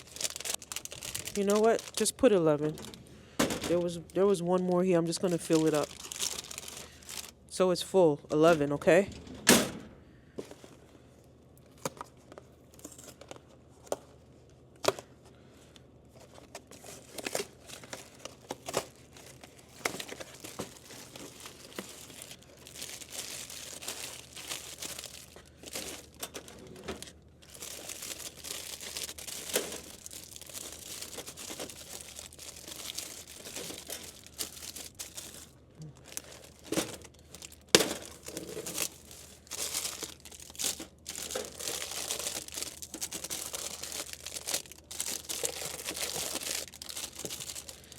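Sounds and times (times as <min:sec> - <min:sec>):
plastic packages crinkling: 0:00.0 - 0:07.5, 0:16.2 - 0:47.9.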